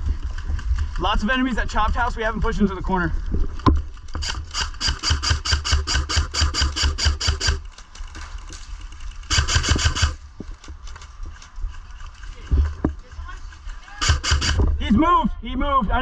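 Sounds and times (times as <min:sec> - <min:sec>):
airsoft gun firing rapid bursts: 0:04.2 - 0:07.6, 0:09.3 - 0:10.2, 0:13.9 - 0:14.6.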